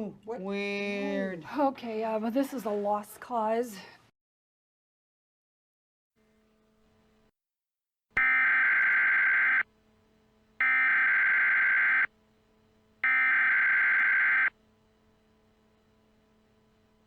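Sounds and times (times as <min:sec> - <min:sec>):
buzzing data tones: 0:08.2 - 0:09.6, 0:10.6 - 0:12.1, 0:13.0 - 0:14.5.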